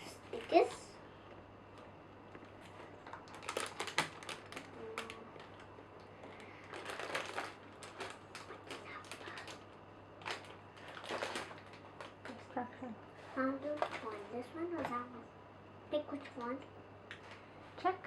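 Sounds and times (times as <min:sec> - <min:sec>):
packaging and plastic parts rustling: 0:02.4 - 0:05.6, 0:06.3 - 0:09.6, 0:10.2 - 0:12.3.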